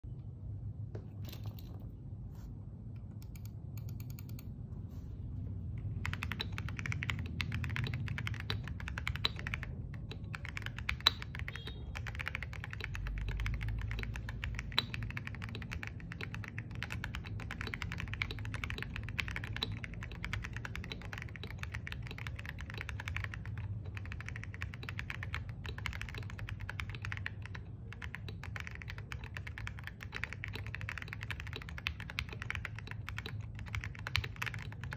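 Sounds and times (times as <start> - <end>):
typing on mechanical keyboard: 3.2 - 4.5, 5.8 - 34.9.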